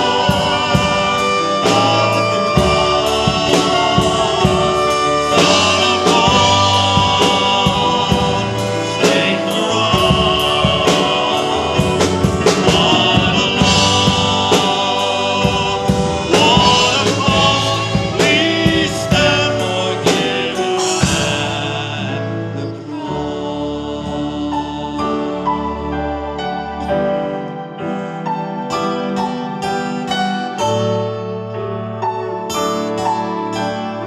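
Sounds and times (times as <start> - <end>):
band with drum kit: 0.0 - 22.6
voices singing gospel song: 0.0 - 26.7.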